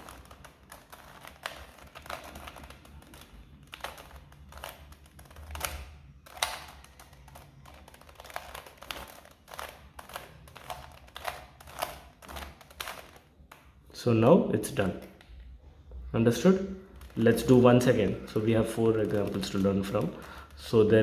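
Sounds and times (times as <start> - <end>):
puzzle cube plastic clicking: 0.0 - 13.7.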